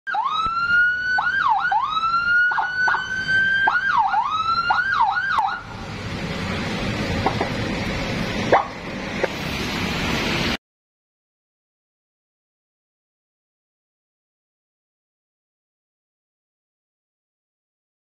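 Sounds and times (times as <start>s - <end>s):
electronic siren wailing: 0.1s - 5.8s.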